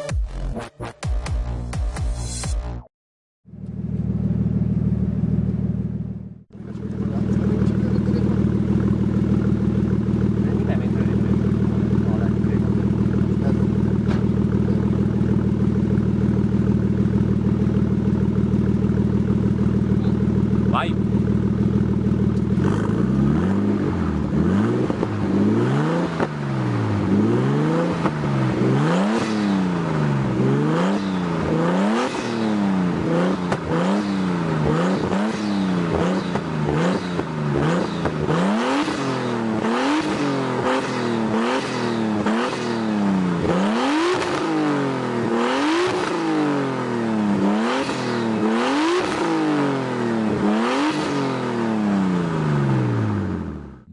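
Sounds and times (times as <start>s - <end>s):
car engine revving: 3.5s - 53.9s.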